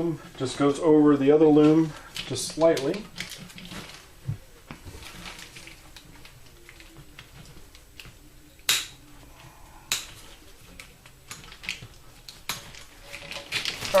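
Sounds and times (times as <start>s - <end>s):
plastic tubing rustling: 0.0s - 14.0s
sharp snapping clicks: 8.0s - 9.0s, 9.9s - 11.5s.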